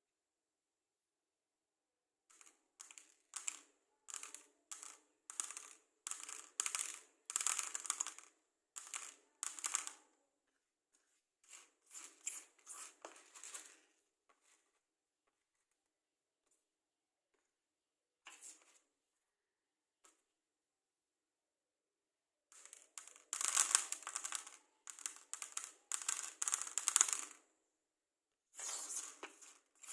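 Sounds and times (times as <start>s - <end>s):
scratchy rustling matchsticks: 11.4s - 13.8s, 28.5s - 29.9s.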